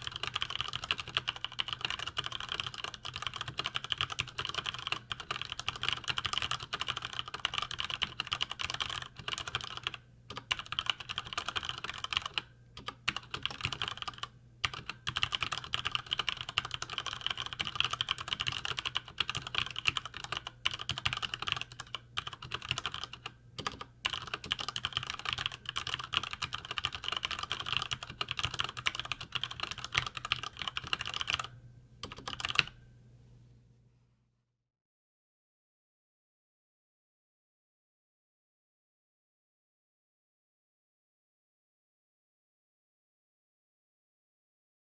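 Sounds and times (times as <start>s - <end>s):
fast typing on mechanical keyboard: 0.0s - 32.8s.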